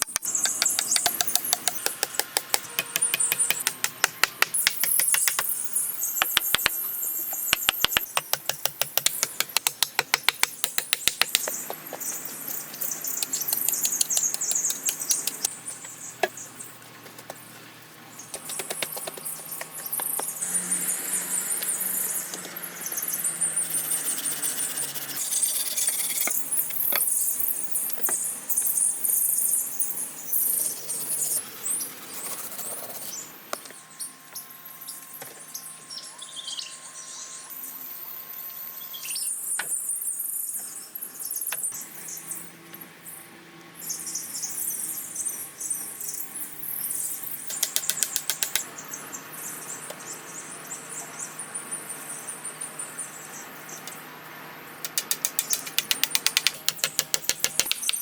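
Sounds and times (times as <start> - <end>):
birds chirping: 0.0 - 8.3, 9.0 - 16.8
sharp knocks: 0.2 - 5.6, 6.2 - 6.7, 7.6 - 11.6, 47.5 - 48.6, 54.9 - 58.0.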